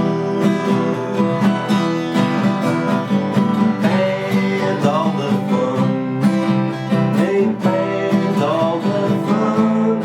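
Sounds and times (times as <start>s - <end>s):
instrumental music with steady chords: 0.0s - 10.0s.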